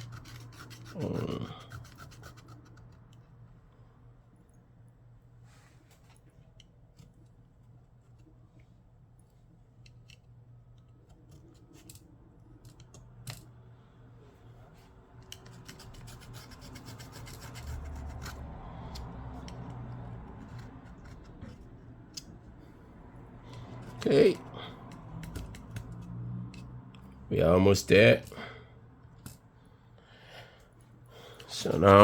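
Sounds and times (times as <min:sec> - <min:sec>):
scraping and rubbing: 0:00.0 - 0:03.1, 0:15.2 - 0:22.6, 0:23.4 - 0:26.7.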